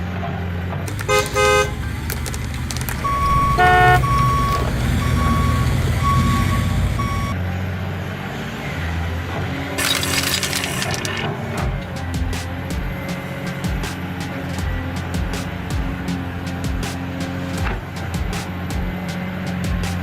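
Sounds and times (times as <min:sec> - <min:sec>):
truck engine rumbling: 0:00.0 - 0:20.0
truck horn toots: 0:00.9 - 0:07.4
electronic beeps: 0:02.9 - 0:07.4.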